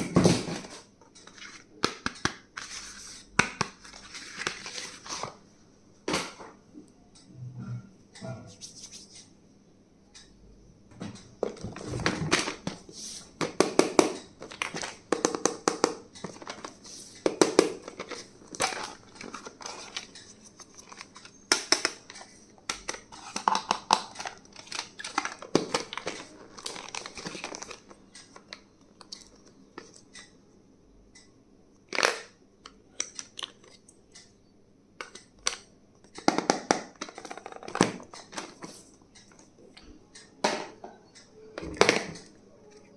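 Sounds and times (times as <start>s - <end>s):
plastic packaging crinkling: 17.7s - 21.4s, 22.8s - 28.5s.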